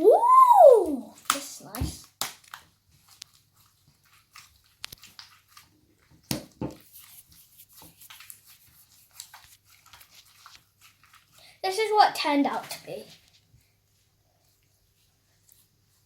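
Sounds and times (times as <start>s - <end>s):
slime squelching by hand: 6.8s - 12.8s.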